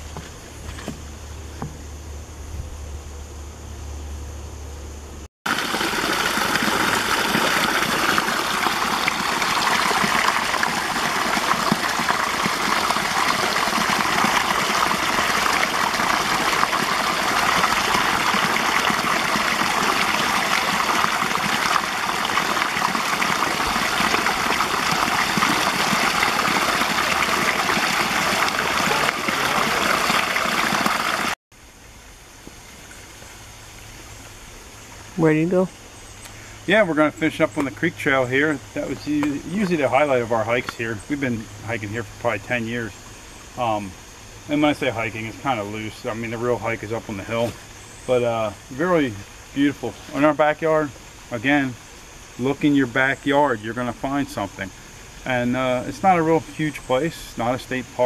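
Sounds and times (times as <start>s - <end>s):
creek water rushing over rocks: 5.5s - 31.4s.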